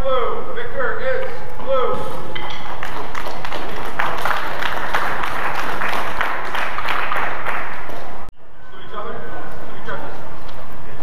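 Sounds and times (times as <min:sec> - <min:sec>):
spectators clapping: 0:02.5 - 0:08.3.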